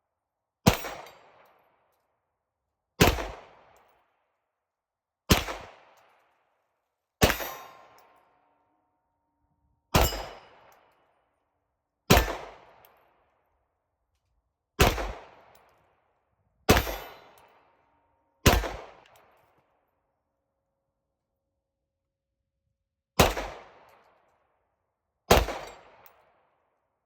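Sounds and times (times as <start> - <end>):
pistol shots echoing: 7.2 - 7.7, 12.1 - 12.6, 16.7 - 17.2, 18.5 - 18.9, 25.3 - 25.8.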